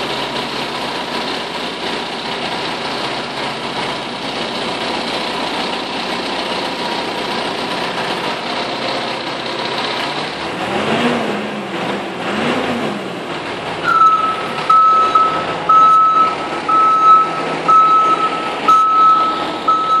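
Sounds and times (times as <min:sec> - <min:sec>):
reversing alarm beeping: 0:13.8 - 0:20.0.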